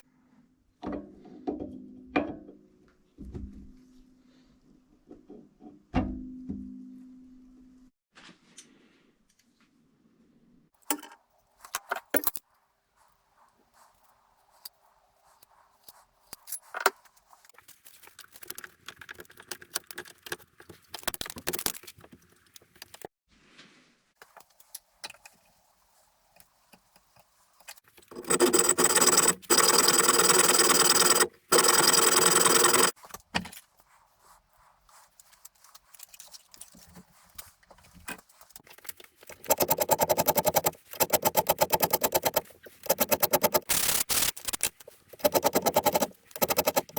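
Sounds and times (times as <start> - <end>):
electric drill drilling into metal: 28.2 - 33.0.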